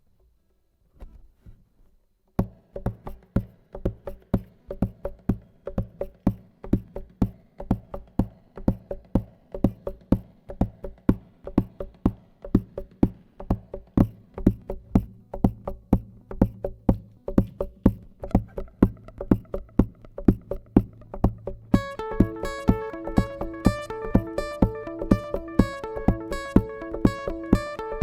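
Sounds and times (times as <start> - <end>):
guitar chords strummed: 18.4 - 28.0.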